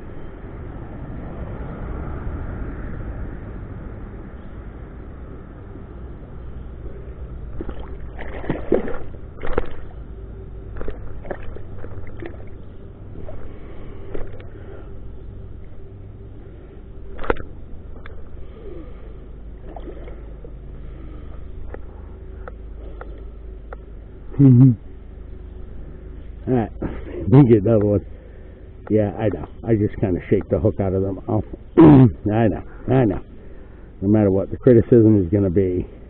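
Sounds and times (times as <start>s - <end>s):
water splashing in shallows: 7.5s - 10.0s, 10.7s - 12.6s, 17.2s - 17.5s, 19.6s - 20.3s
river water rushing: 7.6s - 9.9s.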